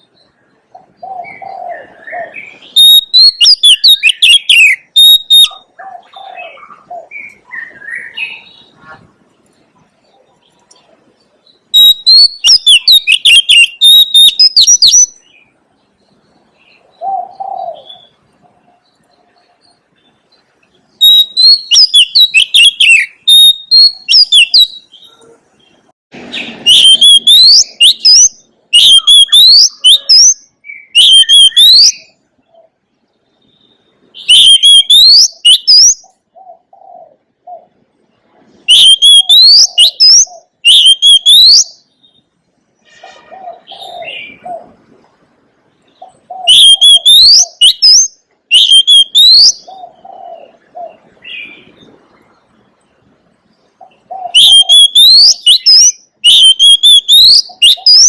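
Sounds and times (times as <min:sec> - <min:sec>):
bird singing whistled phrases: 0:01.1 - 0:05.7, 0:06.4 - 0:08.8, 0:11.7 - 0:15.5, 0:21.0 - 0:25.2, 0:26.3 - 0:32.1, 0:33.5 - 0:36.1, 0:38.7 - 0:42.2, 0:46.3 - 0:49.7, 0:54.2 - 0:58.0.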